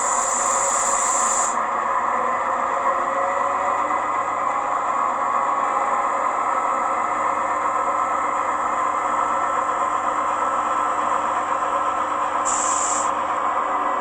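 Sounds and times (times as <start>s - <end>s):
air brake release hiss: 0.0s - 1.6s, 12.4s - 13.2s
diesel locomotive engine idling: 0.0s - 14.0s.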